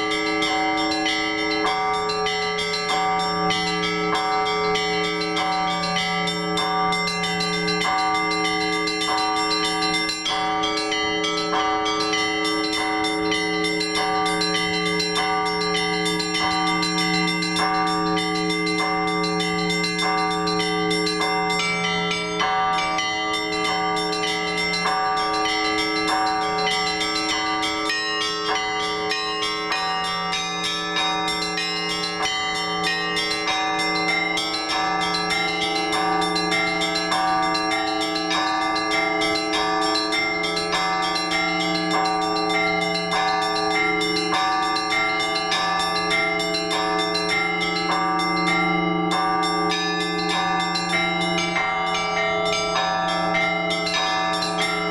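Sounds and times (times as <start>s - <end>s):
large bells humming: 0.0s - 54.9s
small bells ringing quickly: 0.0s - 54.9s.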